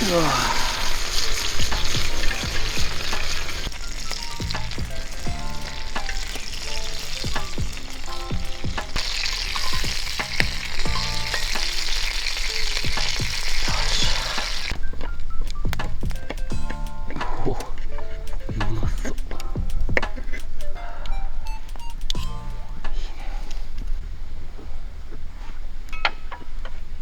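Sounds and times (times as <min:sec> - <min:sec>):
steak sizzling over fire: 0:00.0 - 0:14.8
light background music: 0:00.0 - 0:26.9.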